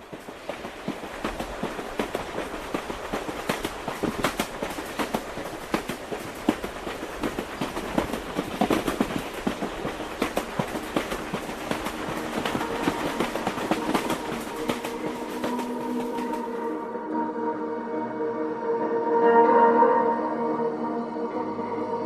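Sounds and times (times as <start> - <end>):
train wheels clattering on rails: 0.0 - 16.7.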